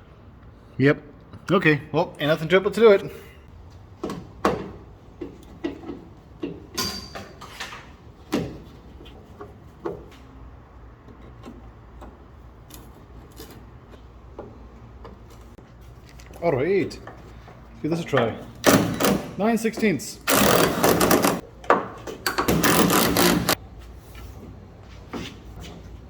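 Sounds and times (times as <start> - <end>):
tools and metal parts knocking: 5.2 - 7.4, 20.3 - 23.6.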